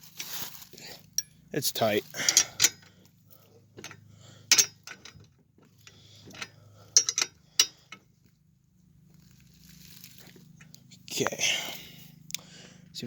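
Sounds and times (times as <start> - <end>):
metallic clicks of tools and chain: 1.0 - 3.0, 3.8 - 8.1.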